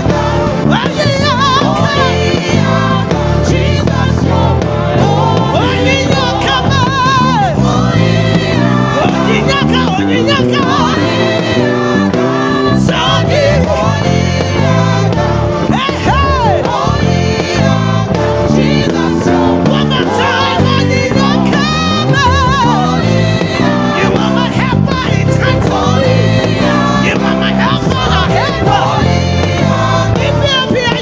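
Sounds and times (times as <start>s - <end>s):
electric bass line: 0.0s - 31.0s
gospel choir with band: 0.0s - 31.0s.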